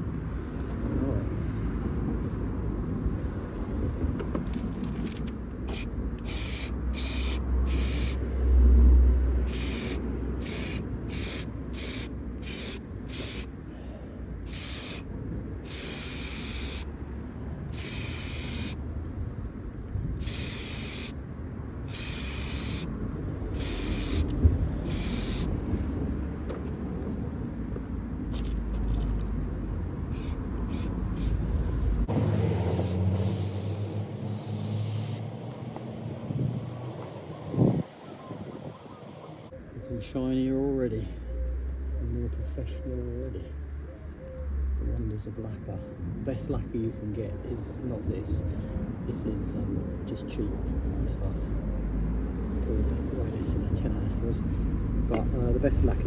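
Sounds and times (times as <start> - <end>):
aerosol can spraying: 5.7 - 8.2, 9.5 - 13.5, 14.5 - 15.0, 15.6 - 16.9, 17.7 - 18.8, 20.2 - 21.2, 21.9 - 22.9, 23.6 - 25.5, 30.1 - 31.4, 32.1 - 35.2.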